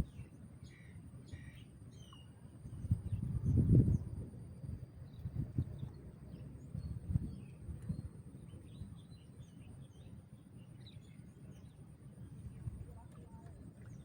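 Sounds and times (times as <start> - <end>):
wind buffeting microphone: 2.7 - 8.8.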